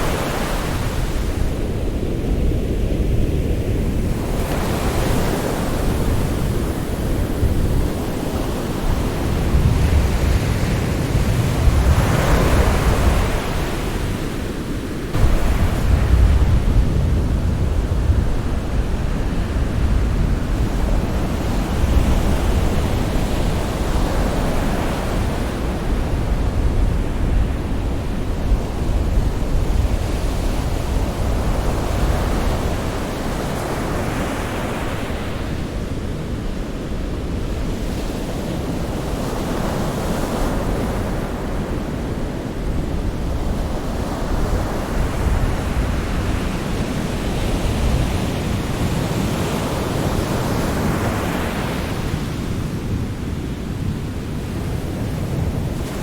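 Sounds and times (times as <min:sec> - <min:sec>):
low rumble of surf: 0:00.0 - 0:56.0
sea waves breaking: 0:03.7 - 0:26.8.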